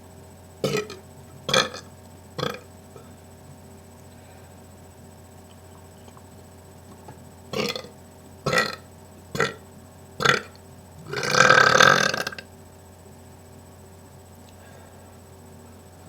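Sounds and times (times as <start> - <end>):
man burping: 0.6 - 3.1, 7.6 - 7.9, 8.5 - 8.8, 9.4 - 9.6, 10.2 - 12.4.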